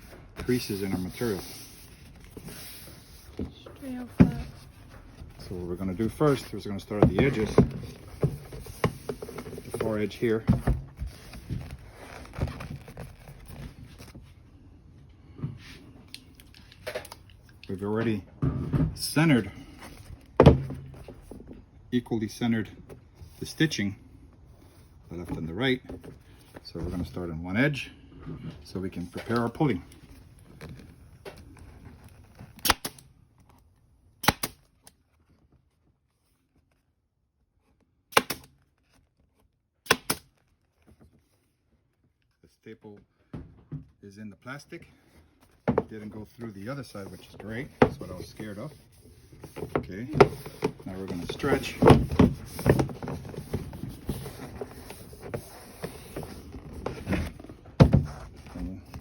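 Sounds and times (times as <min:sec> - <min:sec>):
material rustling: 0:00.0 - 0:14.5.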